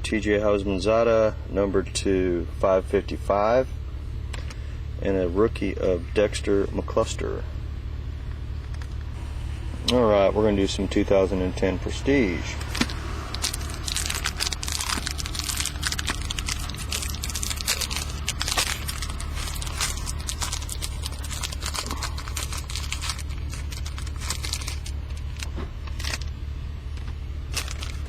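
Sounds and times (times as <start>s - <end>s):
steady low hum: 0.0s - 28.0s
foil wrapper tearing and crinkling: 12.6s - 26.3s, 27.4s - 28.0s.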